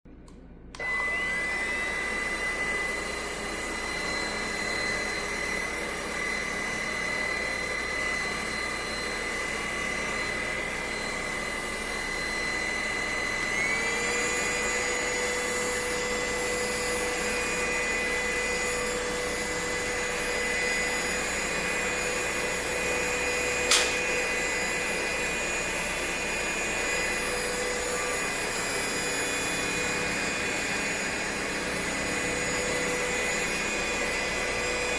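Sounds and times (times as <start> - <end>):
vacuum cleaner motor whine: 0.7 - 34.9
sharp click: 23.7 - 24.1.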